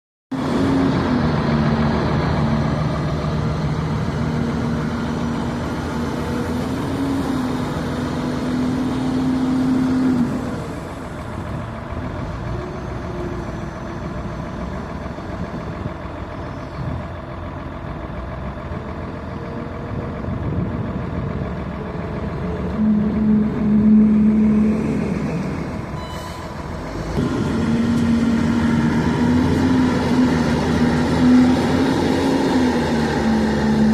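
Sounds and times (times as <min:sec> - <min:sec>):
diesel engine of heavy machine: 0:00.3 - 0:33.9.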